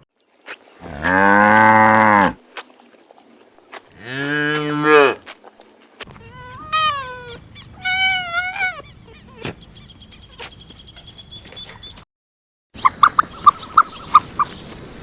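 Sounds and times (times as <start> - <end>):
drawn-out animal calls: 6.0 - 10.4.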